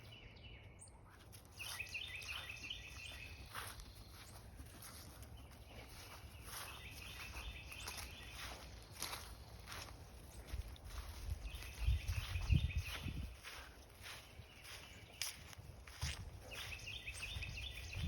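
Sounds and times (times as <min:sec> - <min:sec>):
faint footsteps: 0:01.0 - 0:18.0.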